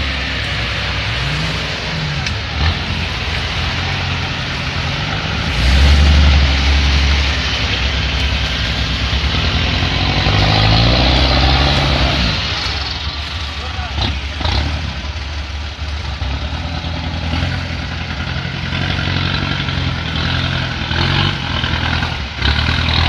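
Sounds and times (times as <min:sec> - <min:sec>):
engine revving: 0:00.0 - 0:23.0.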